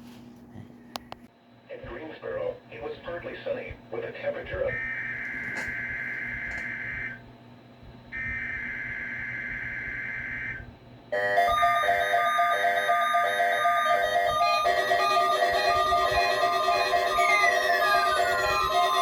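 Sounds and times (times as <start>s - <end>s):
weather alert radios beeping: 4.5s - 7.2s, 8.2s - 10.6s, 11.2s - 19.0s.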